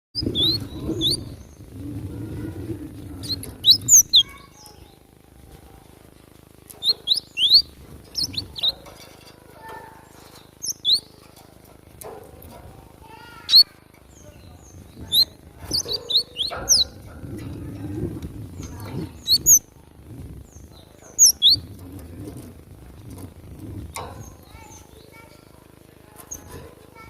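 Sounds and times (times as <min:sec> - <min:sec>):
bird chirping: 0:00.2 - 0:05.2, 0:06.2 - 0:11.4, 0:12.0 - 0:25.4
low rumble: 0:00.2 - 0:09.4, 0:14.1 - 0:25.1.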